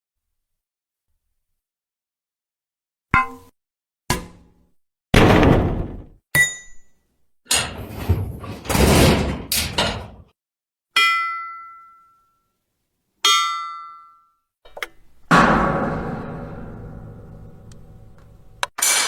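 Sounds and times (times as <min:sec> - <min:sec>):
heavy metal clang: 0:05.2 - 0:06.2, 0:15.3 - 0:19.0
rattling metal clangs: 0:07.5 - 0:10.3, 0:15.3 - 0:19.0
bright metallic pings: 0:11.0 - 0:12.5
ringing metal clink: 0:13.3 - 0:14.4.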